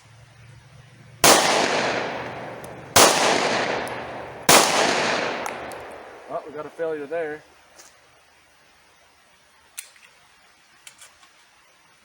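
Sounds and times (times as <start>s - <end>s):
pistol shots echoing: 1.2s - 7.0s.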